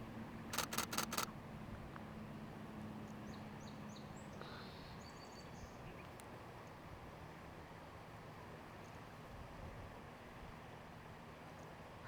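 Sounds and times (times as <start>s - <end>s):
camera shutter burst: 0.5s - 1.3s.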